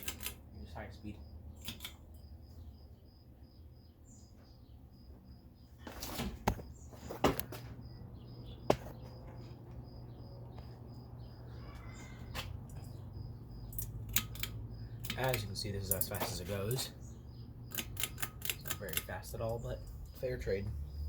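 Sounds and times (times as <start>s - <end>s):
loud sharp clicks: 1.6s - 2.0s, 13.7s - 16.0s, 17.7s - 19.2s.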